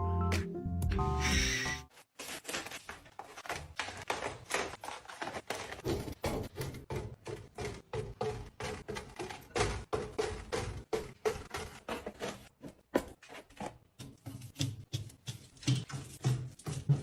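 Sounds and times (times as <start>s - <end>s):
music: 0.0s - 1.9s
containers clicking and tapping: 6.8s - 17.0s.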